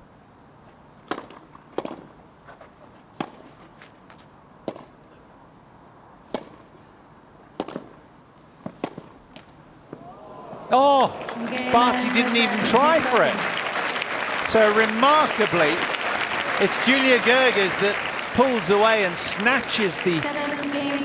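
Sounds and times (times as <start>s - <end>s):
tennis ball struck by rackets: 7.6s - 7.9s.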